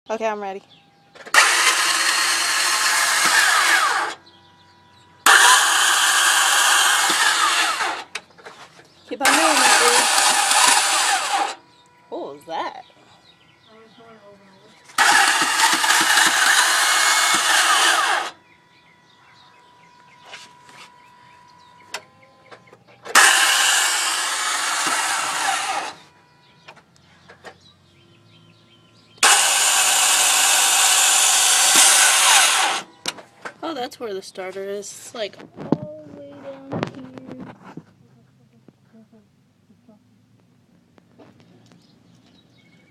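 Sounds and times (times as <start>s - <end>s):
starter motor whirring: 1.0s - 33.9s.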